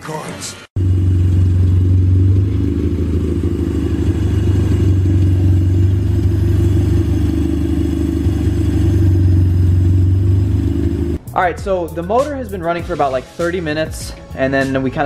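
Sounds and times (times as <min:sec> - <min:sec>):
car engine running: 0:00.8 - 0:11.2.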